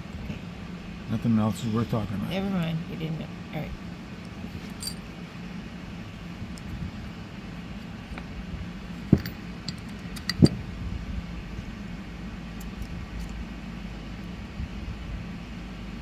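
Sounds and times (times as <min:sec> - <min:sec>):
steady low hum: 0:00.0 - 0:16.0
metal tools clicking: 0:04.7 - 0:05.0, 0:09.1 - 0:10.6
sharp metal knocks: 0:09.1 - 0:10.6.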